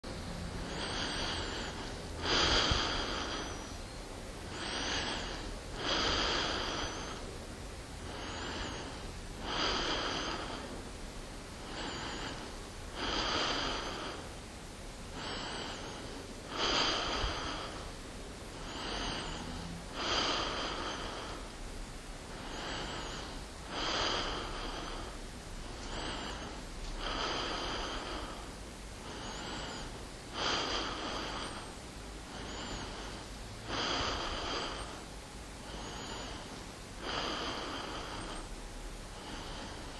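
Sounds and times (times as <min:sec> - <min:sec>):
person breathing close up: 0:00.0 - 0:39.9.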